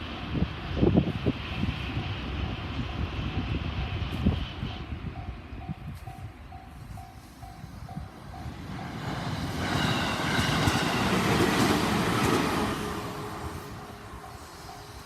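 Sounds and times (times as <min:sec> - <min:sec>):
train passing: 0:00.0 - 0:15.0
crossing alarm bell dinging: 0:05.2 - 0:11.4, 0:13.2 - 0:15.0.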